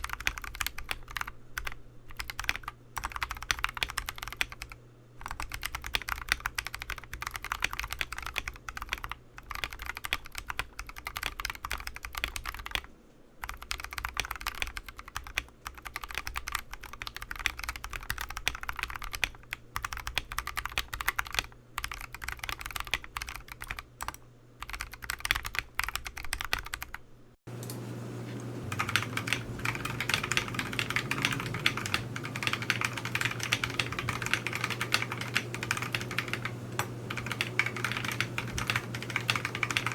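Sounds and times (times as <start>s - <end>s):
mechanical keyboard typing clacks: 0.0s - 12.8s, 13.4s - 27.0s, 28.7s - 39.9s.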